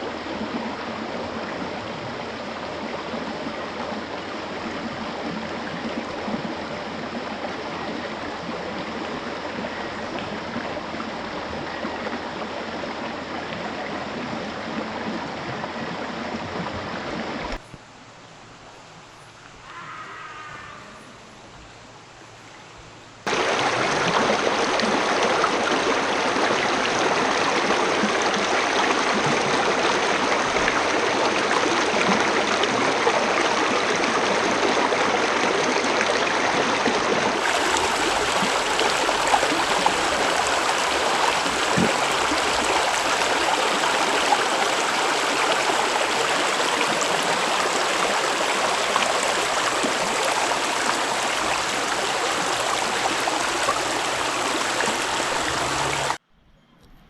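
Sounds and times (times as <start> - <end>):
water rushing over rocks: 23.3 - 56.2.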